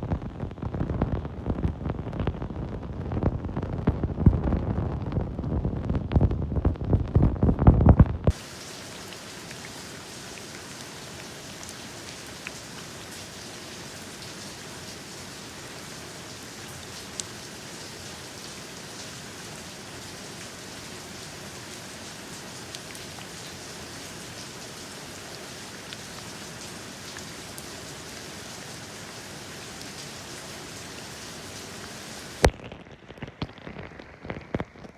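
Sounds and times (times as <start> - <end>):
steady rain hiss: 8.3 - 34.9.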